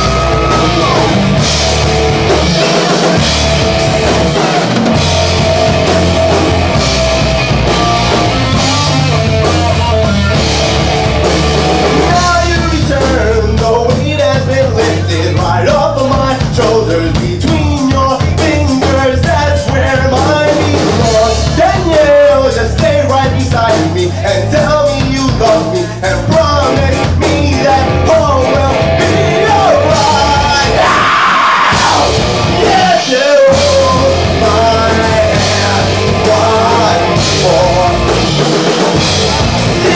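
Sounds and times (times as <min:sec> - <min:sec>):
person singing: 0:00.0 - 0:01.4, 0:12.0 - 0:38.5, 0:39.6 - 0:39.9
loud rock music: 0:00.0 - 0:39.9.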